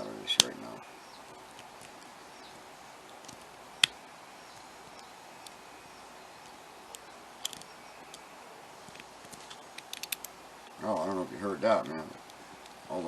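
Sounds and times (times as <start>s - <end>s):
metallic clicks of lock picking: 9.5s - 10.3s.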